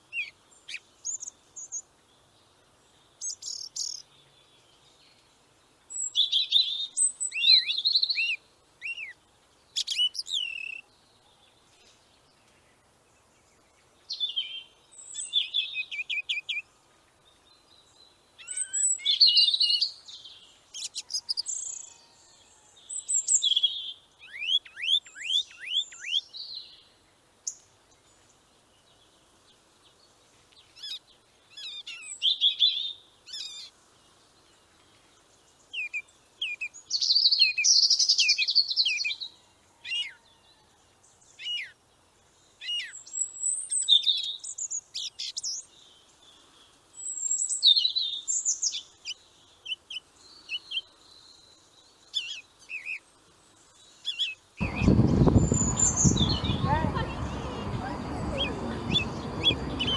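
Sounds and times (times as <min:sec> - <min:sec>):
songbird chirps and trills: 0:54.1 - 0:59.9.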